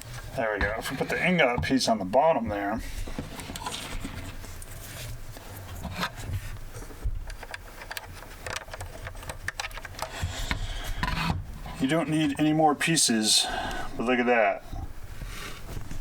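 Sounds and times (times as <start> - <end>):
plastic rubbing: 0.0 - 12.5.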